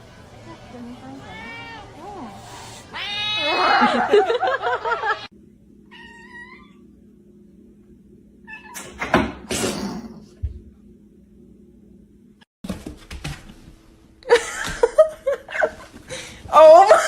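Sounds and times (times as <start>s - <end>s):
cat yowling: 1.2s - 4.0s, 5.9s - 6.8s.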